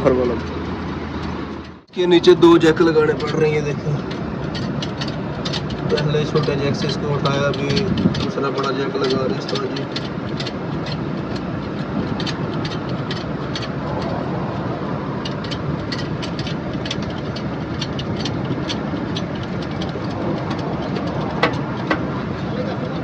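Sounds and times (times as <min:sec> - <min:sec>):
diesel engine idling: 0:00.0 - 0:23.0
sharp clicks and taps: 0:03.2 - 0:14.2.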